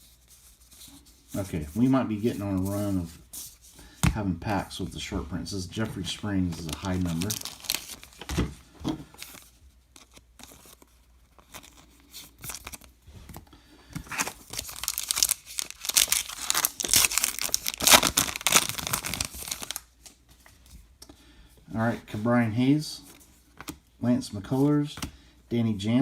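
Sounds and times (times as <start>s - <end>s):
card pack wrapper crinkling: 6.0s - 8.5s, 9.1s - 13.0s, 14.0s - 20.1s.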